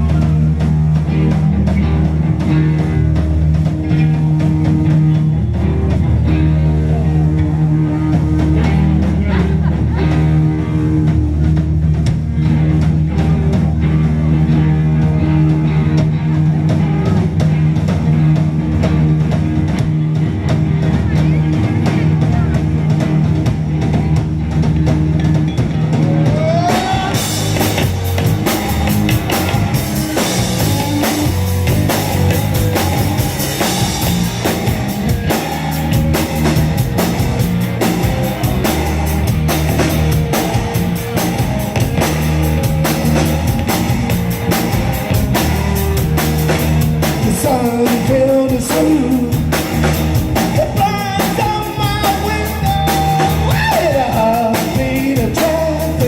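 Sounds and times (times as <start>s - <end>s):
rock band playing: 0.0s - 56.0s.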